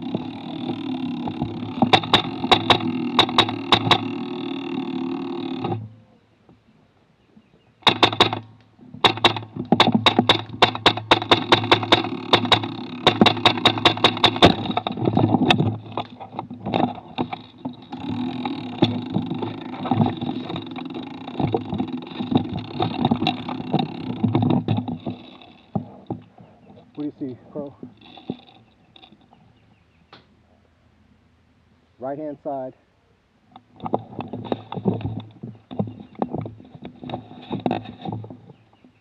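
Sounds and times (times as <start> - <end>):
airsoft rifle shots: 7.8 - 14.7
handling and movement noise: 7.8 - 29.6, 33.5 - 39.0.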